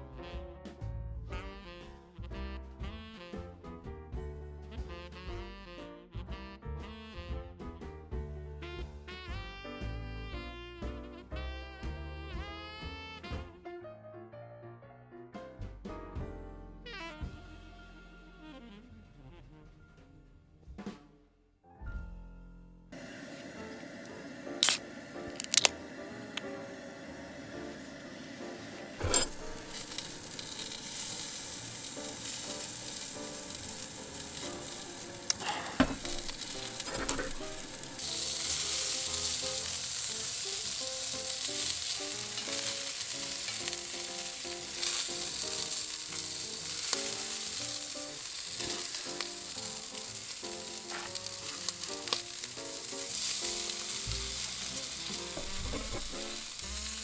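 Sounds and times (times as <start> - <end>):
food sizzling on a griddle: 23.0 - 57.0.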